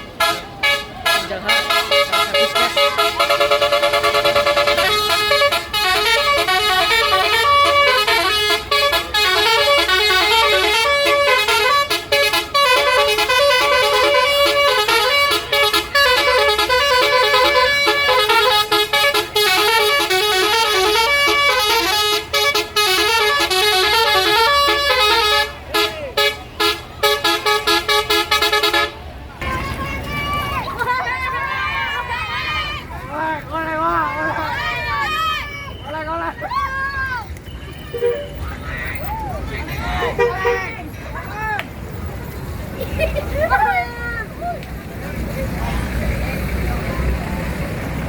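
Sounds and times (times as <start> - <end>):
bus musical horn playing tune: 0.0 - 29.1, 37.7 - 38.4, 39.8 - 40.8.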